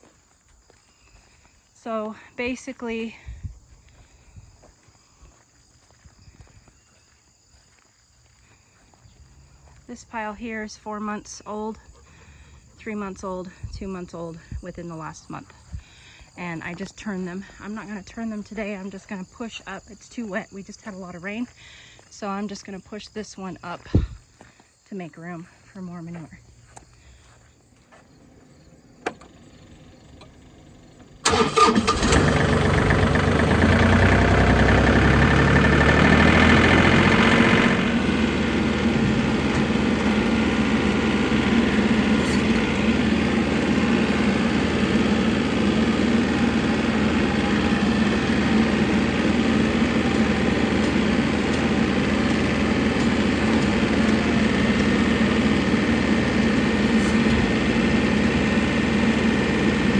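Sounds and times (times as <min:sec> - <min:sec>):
engine starting and running: 0:28.2 - 0:59.9.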